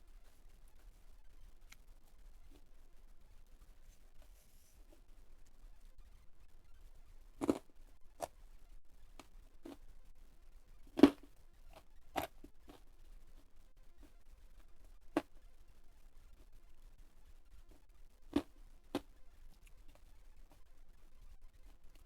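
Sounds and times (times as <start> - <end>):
crunchy chewing: 7.4 - 8.4, 10.8 - 14.1, 18.3 - 20.1.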